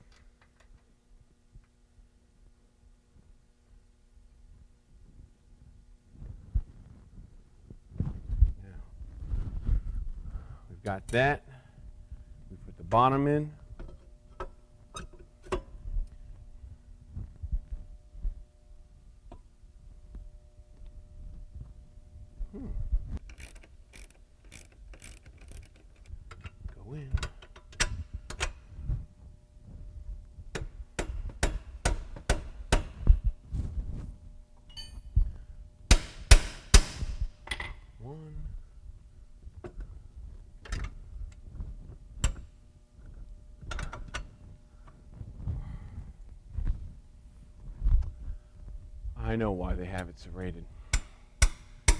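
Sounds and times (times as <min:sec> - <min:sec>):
hand tools and bolts clicking: 0:23.2 - 0:26.6, 0:50.9 - 0:51.9.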